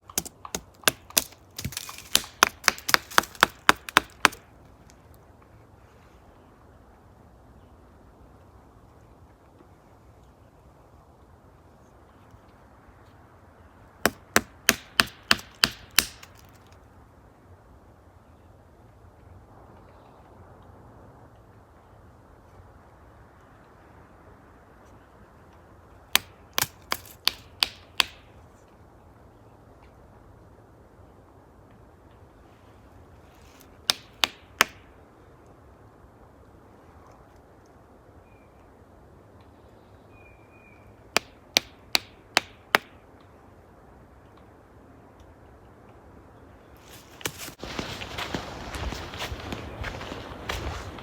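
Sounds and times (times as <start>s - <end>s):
faint outdoor background: 0.0s - 51.0s
stick knocking on wood: 0.2s - 4.4s.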